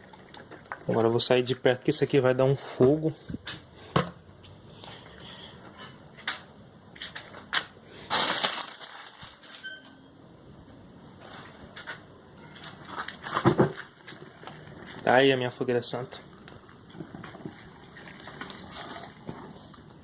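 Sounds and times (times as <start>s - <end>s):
paper burning with crackles: 7.6s - 9.6s, 12.7s - 20.0s.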